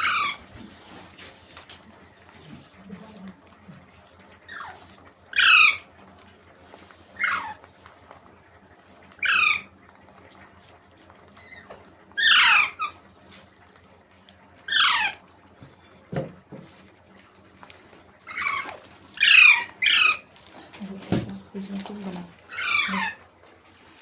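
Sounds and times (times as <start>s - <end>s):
parrot squawking: 0.0s - 0.5s, 4.4s - 5.9s, 7.1s - 7.7s, 9.1s - 9.7s, 11.4s - 13.1s, 14.6s - 15.3s, 18.2s - 20.3s, 22.5s - 23.2s.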